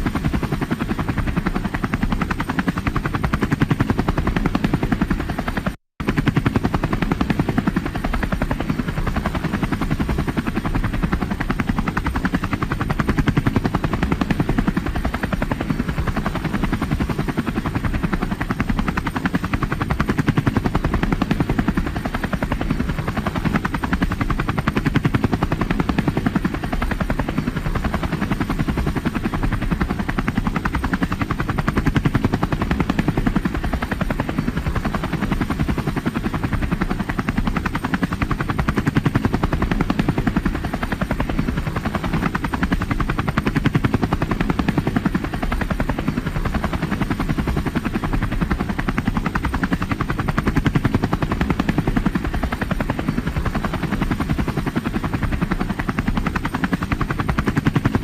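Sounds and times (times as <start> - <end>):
helicopter engine noise: 0.0 - 58.0
helicopter rotor chopping: 0.0 - 58.0.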